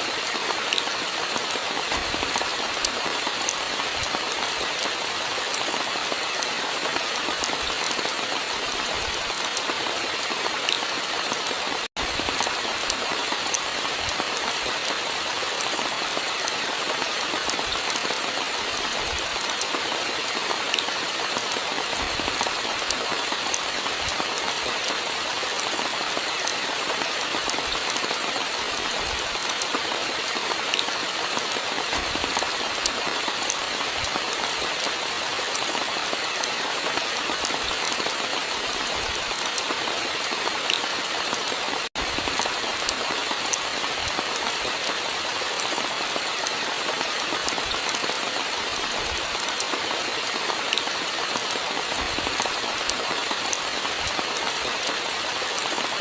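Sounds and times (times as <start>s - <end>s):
steady rainfall: 0.0s - 56.0s.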